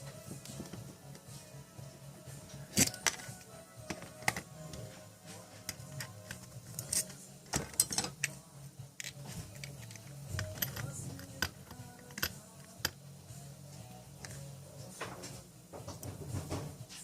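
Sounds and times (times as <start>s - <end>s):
faint background music: 0.0s - 17.0s
small parts clicking and clinking: 5.6s - 8.4s, 9.0s - 13.0s.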